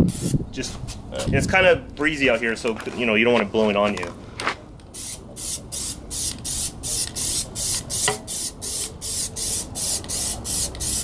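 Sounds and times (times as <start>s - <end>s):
aerosol can spraying hisses: 5.0s - 11.0s.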